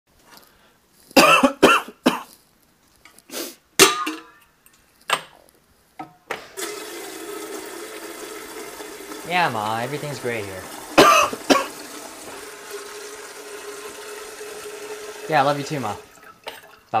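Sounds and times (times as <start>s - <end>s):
person coughing: 1.2s - 2.3s, 11.0s - 11.8s
throat clearing: 11.0s - 11.7s.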